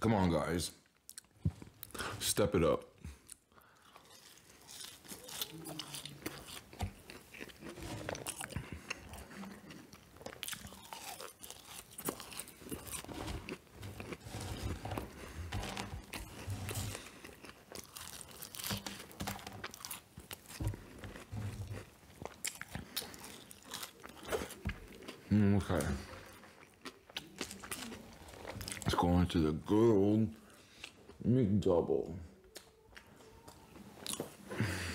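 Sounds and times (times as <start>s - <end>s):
person chewing and crunching food: 0.8s - 2.2s, 3.0s - 31.2s, 32.4s - 34.9s
crisp crackles: 4.0s - 26.5s.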